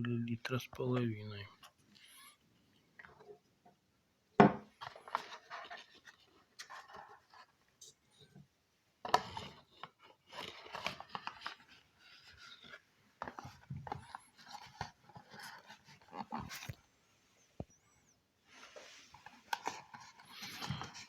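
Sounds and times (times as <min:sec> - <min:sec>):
hands handling box and plastic cup: 0:04.4 - 0:08.3, 0:09.0 - 0:16.8, 0:18.6 - 0:21.0.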